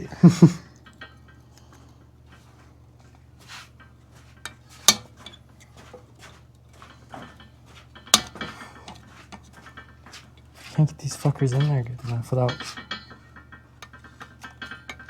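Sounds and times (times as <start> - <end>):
metal parts and tools clinking: 3.7 - 15.0.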